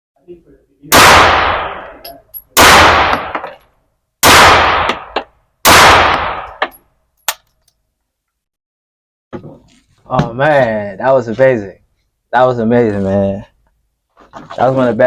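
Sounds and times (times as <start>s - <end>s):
gunshots with echoing tail: 0.9s - 3.5s, 4.2s - 6.7s
light metallic clinks: 2.0s - 2.6s.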